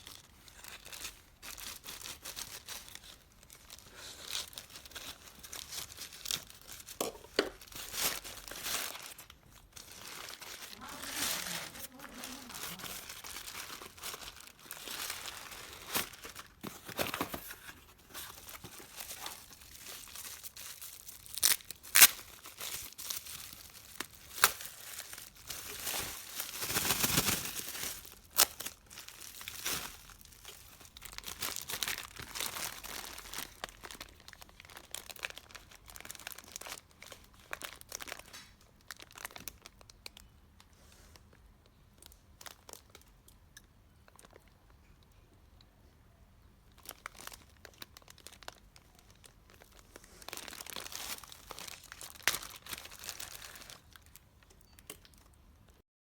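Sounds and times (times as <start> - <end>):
packaging crinkling and rustling: 0.0 - 43.1, 46.7 - 55.4
packaging tearing: 7.6 - 39.7, 46.8 - 54.0.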